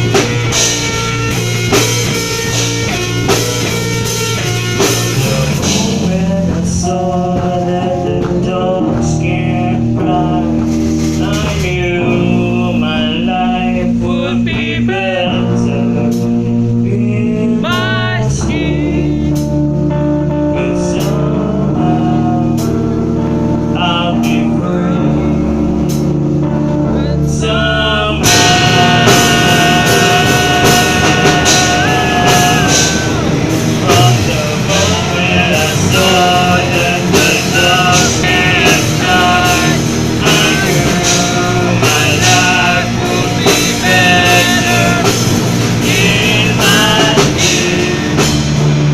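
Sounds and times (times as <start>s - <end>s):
guitar: 0.0s - 48.9s
man singing: 4.4s - 19.5s, 20.4s - 22.9s, 23.7s - 26.1s, 26.7s - 48.6s.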